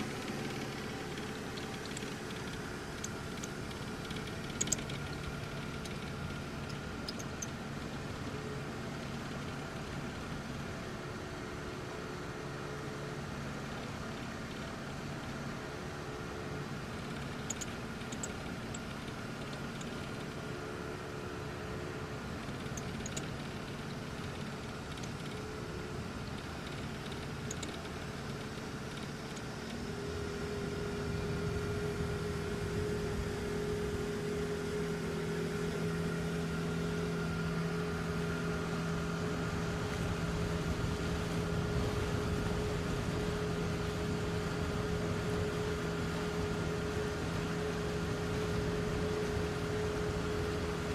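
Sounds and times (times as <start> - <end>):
boat engine running: 0.0 - 50.9.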